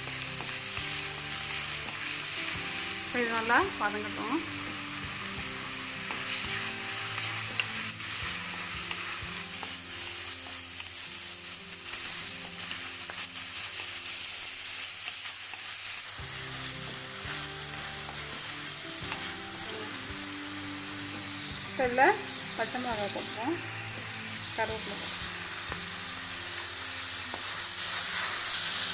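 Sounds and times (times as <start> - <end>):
vegetables sizzling in hot oil: 0.0 - 28.9.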